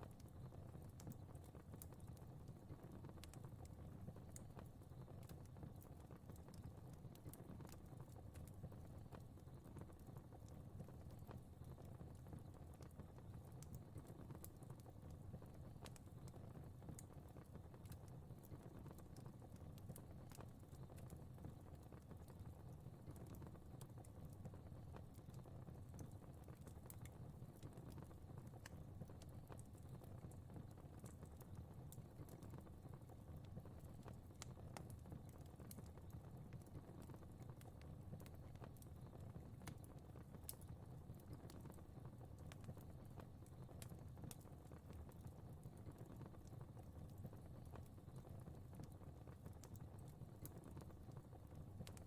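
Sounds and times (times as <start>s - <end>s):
fire crackling with pops: 0.0s - 52.0s.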